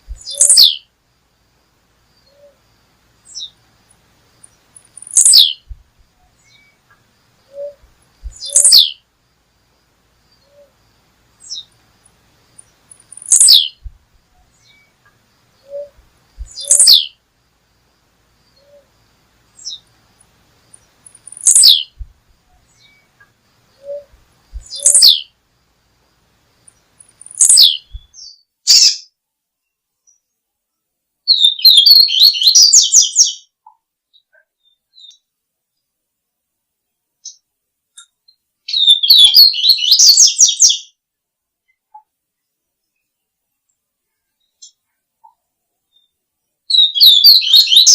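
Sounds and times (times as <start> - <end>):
songbird sharp downward call: 0.1 - 0.9, 5.0 - 6.8, 7.5 - 9.0, 11.4 - 11.7, 13.2 - 14.9, 15.6 - 17.2, 19.6 - 19.8, 21.4 - 25.3
bird chattering: 7.6 - 8.9, 13.0 - 13.8, 15.7 - 17.1, 21.2 - 21.9, 23.9 - 25.2.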